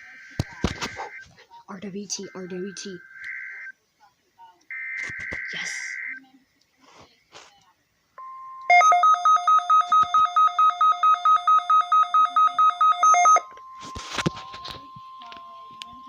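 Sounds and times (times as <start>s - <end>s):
steady electronic beep: 8.2s - 16.0s.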